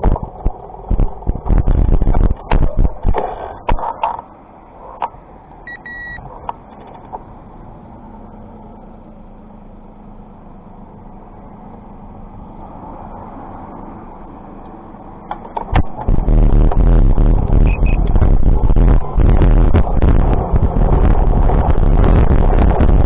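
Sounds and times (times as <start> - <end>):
vehicle running: 0.0 - 23.0
short high beep: 5.7 - 6.2, 17.6 - 18.1.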